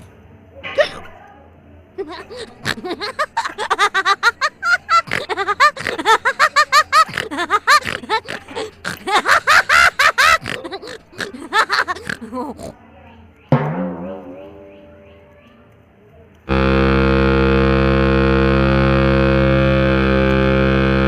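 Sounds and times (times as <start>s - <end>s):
cartoon voices giggling: 0.6s - 1.2s, 2.0s - 12.8s.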